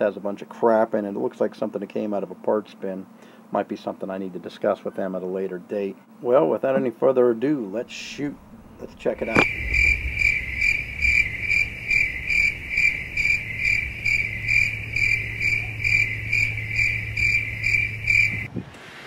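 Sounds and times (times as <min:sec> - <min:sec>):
low steady hum: 0:05.6 - 0:18.5
cricket chirping: 0:08.1 - 0:18.5.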